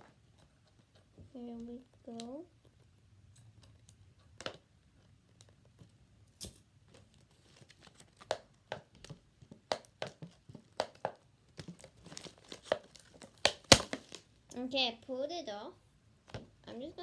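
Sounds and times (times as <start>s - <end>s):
packaging crackling and tearing: 11.6s - 14.3s.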